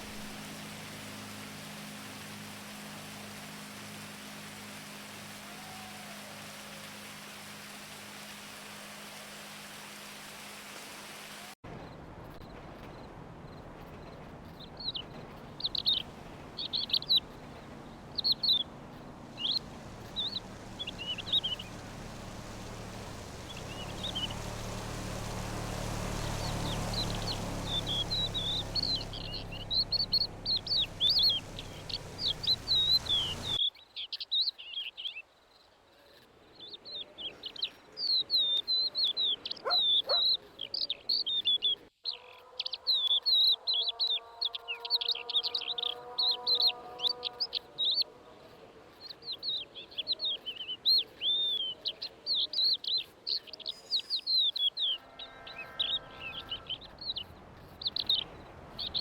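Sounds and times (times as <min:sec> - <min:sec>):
songbirds chirping: 0:00.0 - 0:59.0
low rumbling: 0:11.7 - 0:33.6.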